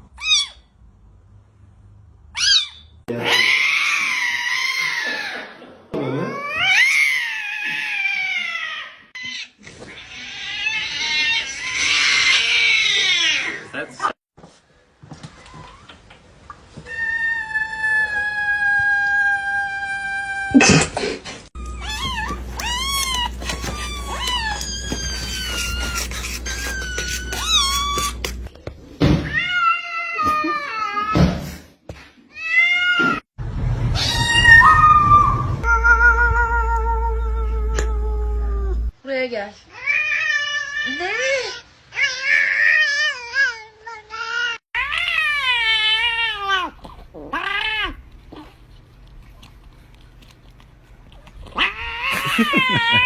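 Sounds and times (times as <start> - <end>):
cat yowling: 2.4 - 5.4, 6.2 - 13.7, 21.6 - 28.5, 34.0 - 38.8, 44.2 - 48.5, 51.4 - 53.0
cat meowing: 21.6 - 28.5, 51.5 - 53.0.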